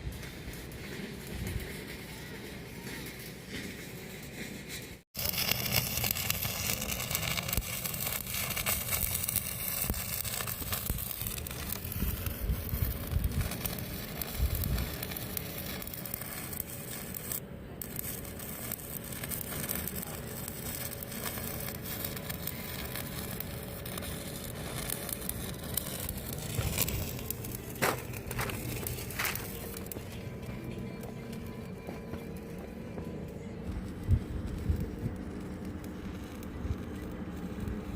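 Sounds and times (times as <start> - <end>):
welding arc crackling: 0.0 - 37.9.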